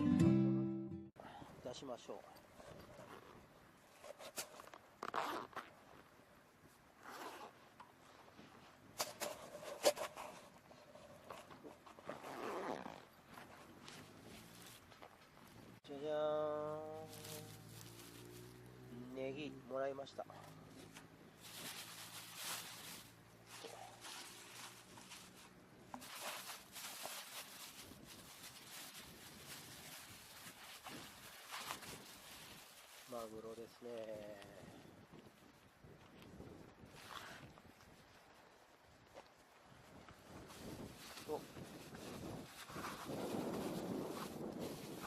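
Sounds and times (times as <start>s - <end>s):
zipper rasping: 2.6s - 6.0s, 7.0s - 7.6s, 9.3s - 14.9s
faint rustling and handling: 16.8s - 18.7s, 20.2s - 45.0s.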